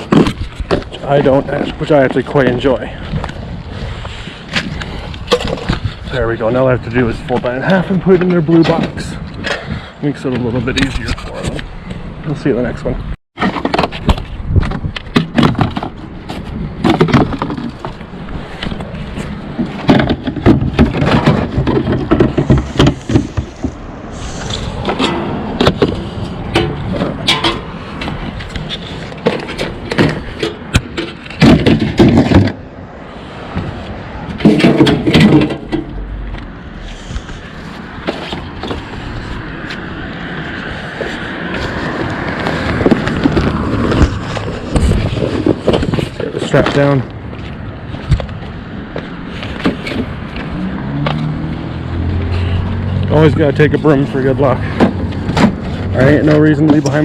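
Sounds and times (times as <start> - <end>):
rumbling: 13.4 - 57.0
scrap metal clanking: 15.1 - 32.6, 33.6 - 39.4.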